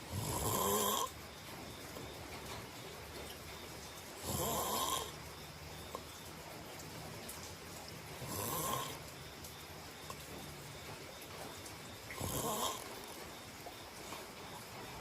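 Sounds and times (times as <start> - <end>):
person snoring: 0.1 - 1.1, 4.2 - 5.1, 8.2 - 9.0, 12.2 - 12.9.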